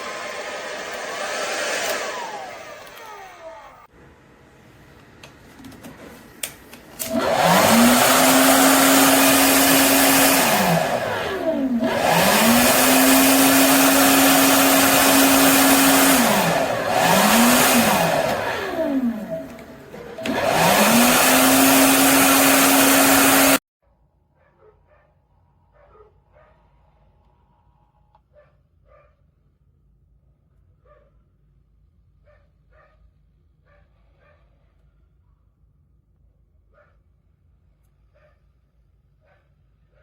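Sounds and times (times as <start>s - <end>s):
hair dryer blowing: 0.0s - 3.9s, 6.5s - 23.6s.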